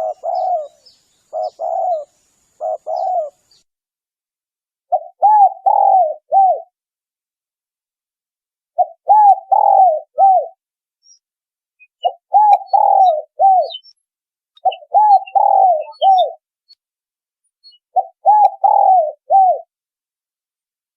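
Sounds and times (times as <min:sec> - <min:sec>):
dove cooing: 0:00.0 - 0:03.6, 0:04.9 - 0:06.7, 0:08.8 - 0:10.6, 0:12.0 - 0:13.9, 0:14.6 - 0:16.4, 0:17.9 - 0:19.7
faint high chirps: 0:14.6 - 0:16.8.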